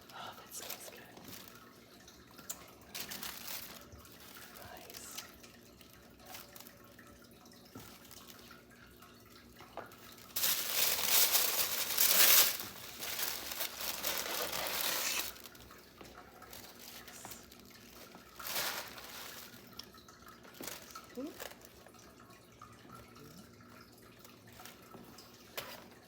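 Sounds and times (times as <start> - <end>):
packaging crinkling: 0.0 - 5.3, 6.2 - 7.1, 9.9 - 15.8, 16.4 - 21.8.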